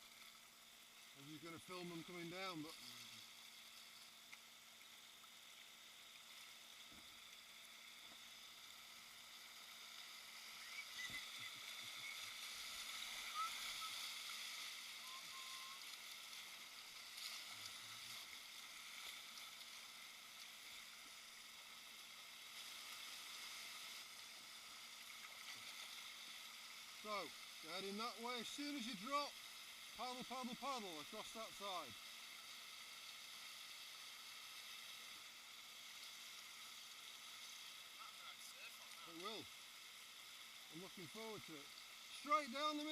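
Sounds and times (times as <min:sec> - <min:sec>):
tiny chirps: 0:10.3 - 0:12.4.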